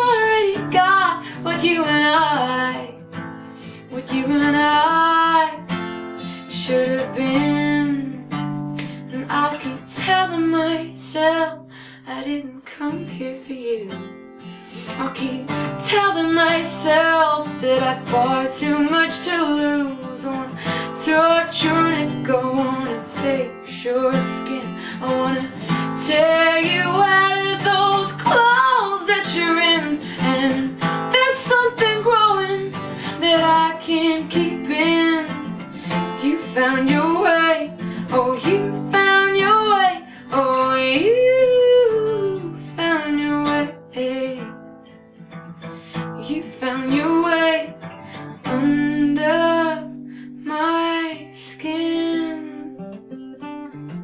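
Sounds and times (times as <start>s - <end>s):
acoustic guitar strumming: 14.0s - 50.4s.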